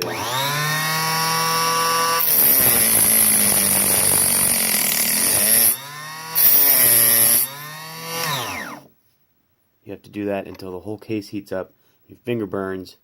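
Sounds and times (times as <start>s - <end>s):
electric chop saw cutting brass: 0.0s - 8.8s.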